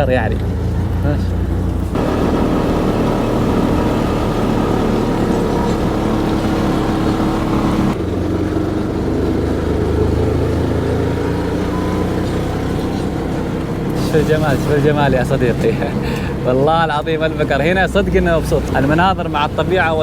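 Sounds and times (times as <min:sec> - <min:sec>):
auto-rickshaw engine droning: 0:00.0 - 0:20.0.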